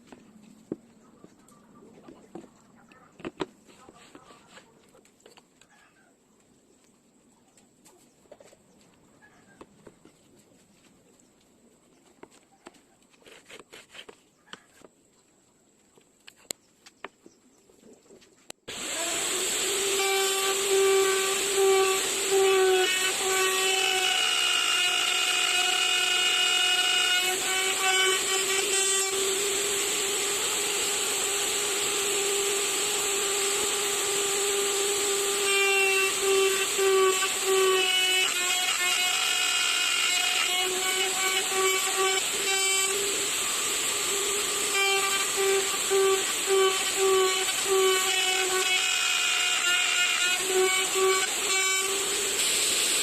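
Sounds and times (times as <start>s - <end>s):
machine whining over hiss: 18.7s - 24.4s, 40.5s - 48.8s, 49.6s - 53.0s.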